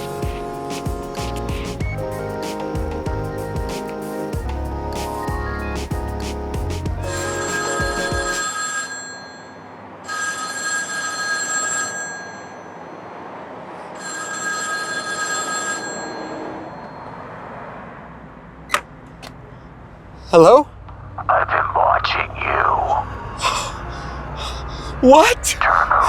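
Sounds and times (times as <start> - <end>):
payphone ringing: 7.1 - 12.7, 14.0 - 17.1.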